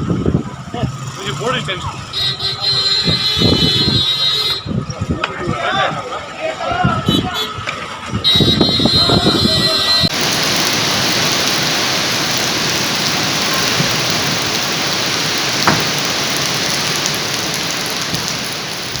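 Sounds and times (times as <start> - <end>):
heavy rain pouring: 10.1 - 19.0.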